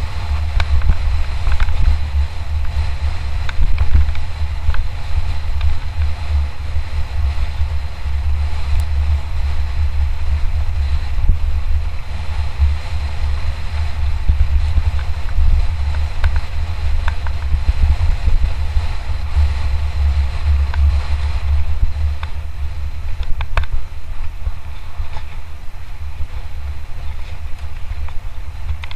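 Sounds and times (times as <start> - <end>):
bike clicks and rattles: 0.0 - 28.9
tyre and trail noise: 0.0 - 28.9
wind rumbling on microphone: 0.0 - 28.9.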